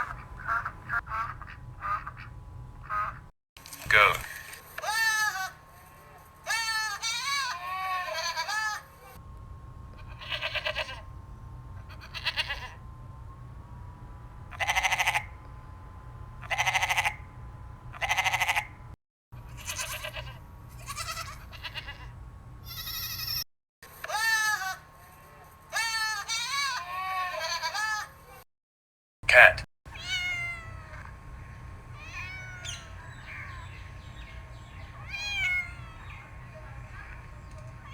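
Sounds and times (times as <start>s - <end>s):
goats bleating: 4.8s - 8.9s, 10.0s - 11.1s, 11.8s - 12.8s, 14.5s - 15.3s, 16.4s - 17.2s, 18.0s - 18.8s, 19.5s - 22.1s, 22.7s - 23.4s, 24.1s - 28.1s.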